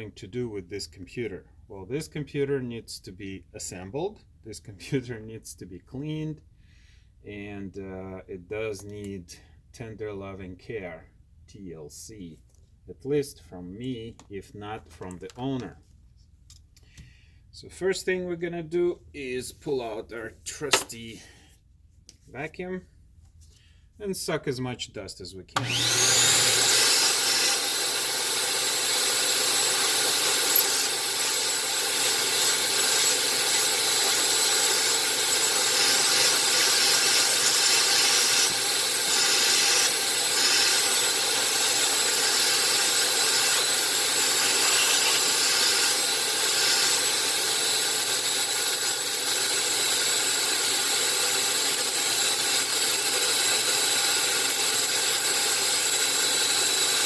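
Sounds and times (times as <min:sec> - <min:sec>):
small vacuum cleaner running: 0:25.6 - 0:57.0.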